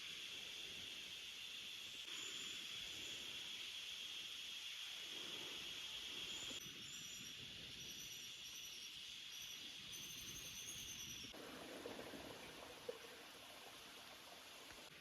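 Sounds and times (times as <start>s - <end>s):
insects hissing: 0.0s - 11.4s.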